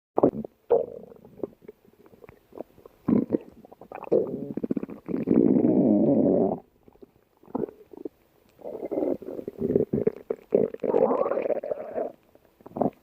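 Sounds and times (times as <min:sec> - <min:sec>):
stomach growling: 0:00.2 - 0:13.0.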